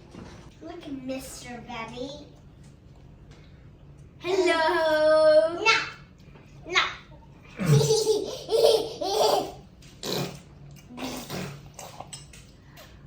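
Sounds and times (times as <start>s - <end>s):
young child laughing: 7.6s - 9.7s.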